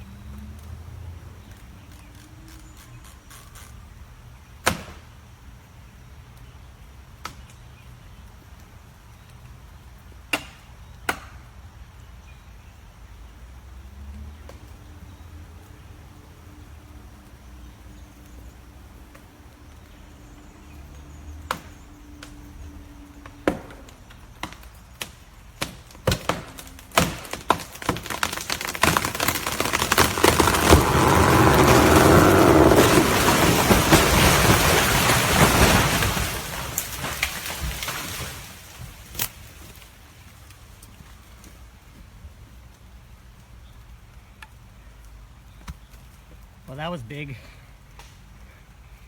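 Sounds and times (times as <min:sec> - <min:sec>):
wood cracking and snapping: 0:23.6 - 0:40.9
falling tree crash: 0:25.6 - 0:39.8.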